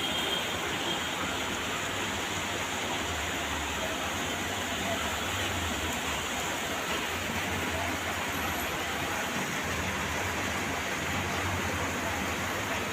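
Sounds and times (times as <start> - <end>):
heavy rain falling: 0.0 - 12.9.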